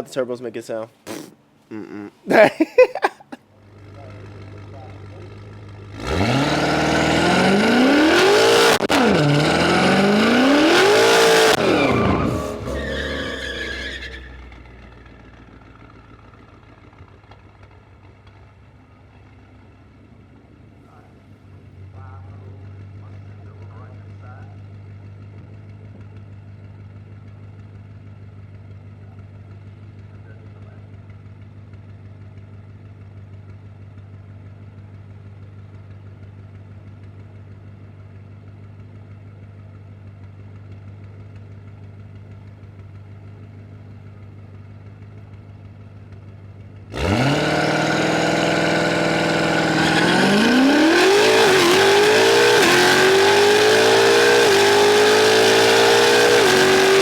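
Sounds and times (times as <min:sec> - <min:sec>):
car engine revving and accelerating: 0:05.7 - 0:14.2, 0:46.9 - 0:57.0.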